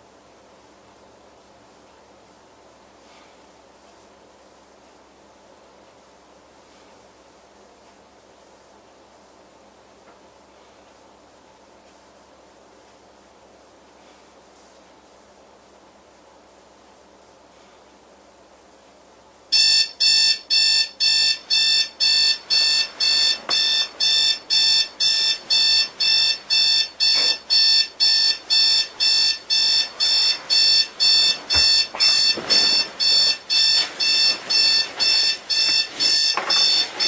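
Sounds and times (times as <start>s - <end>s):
faint room hiss: 0.0s - 37.0s
high-pitched alarm beeps: 19.5s - 37.0s.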